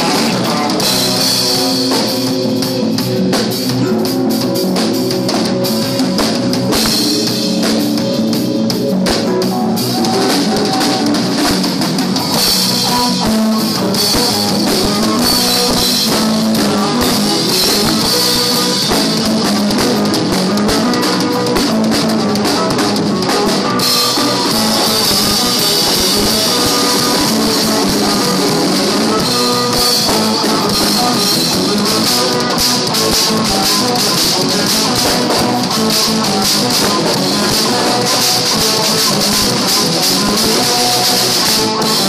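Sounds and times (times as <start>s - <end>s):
drum kit: 0.0s - 42.0s
rock band playing live: 0.0s - 42.0s.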